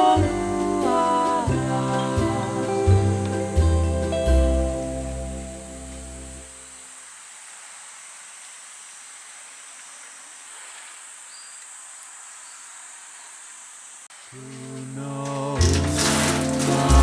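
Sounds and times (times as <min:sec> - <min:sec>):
insects chirring: 0:00.0 - 0:17.0
faint chirp: 0:10.0 - 0:13.4.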